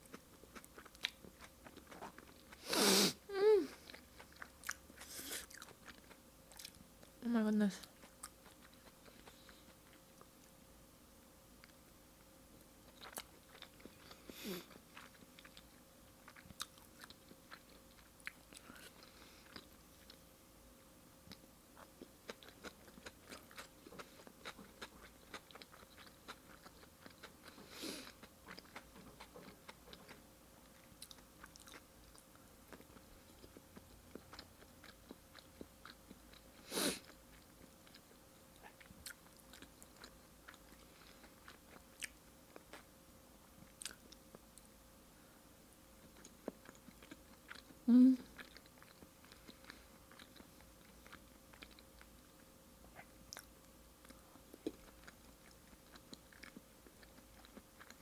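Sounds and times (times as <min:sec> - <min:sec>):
wet chewing: 0:21.3 - 0:36.4.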